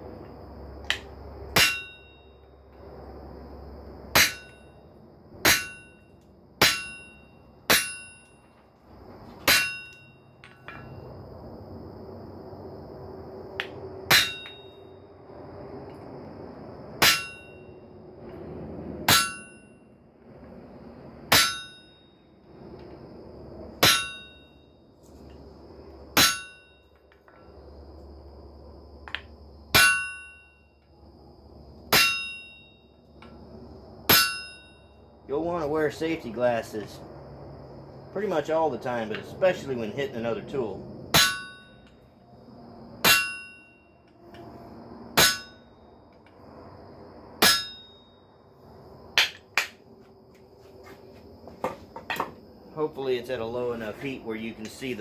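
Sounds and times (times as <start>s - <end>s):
hammer striking chisel on steel: 1.6s - 2.2s, 4.1s - 4.6s, 5.4s - 6.0s, 6.6s - 8.4s, 9.4s - 10.9s, 14.1s - 14.7s, 17.0s - 17.6s, 19.1s - 19.6s, 21.3s - 21.9s, 23.8s - 24.4s, 26.2s - 26.8s, 29.7s - 30.5s, 31.9s - 32.7s, 34.1s - 34.8s, 41.2s - 41.8s, 43.0s - 43.7s, 45.2s - 45.6s, 47.4s - 47.9s.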